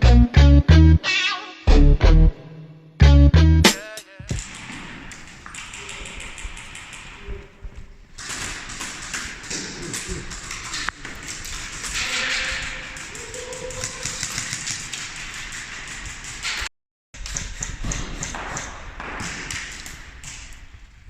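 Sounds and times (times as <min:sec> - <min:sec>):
airsoft guns firing: 0:04.3 - 0:07.4
movement noise: 0:04.3 - 0:16.7.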